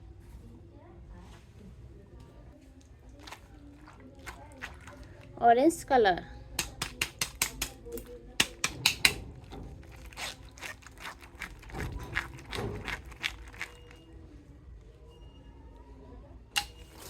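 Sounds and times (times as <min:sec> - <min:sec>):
plastic packaging crinkling: 0:09.8 - 0:14.1.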